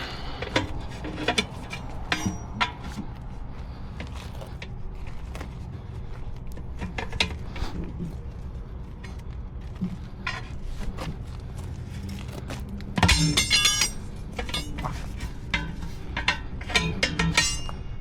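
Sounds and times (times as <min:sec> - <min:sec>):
metallic clicks of tire tools: 0:00.0 - 0:04.8, 0:12.8 - 0:18.0
steady low hum: 0:00.0 - 0:18.0.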